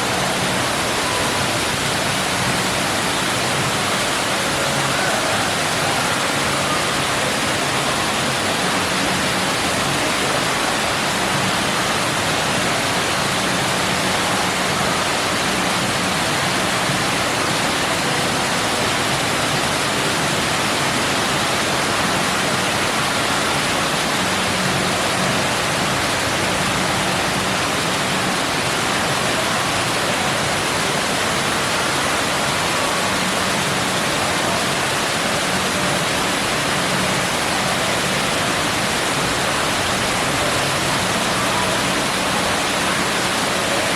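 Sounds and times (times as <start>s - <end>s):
water pouring down waterfall: 0.0s - 43.9s.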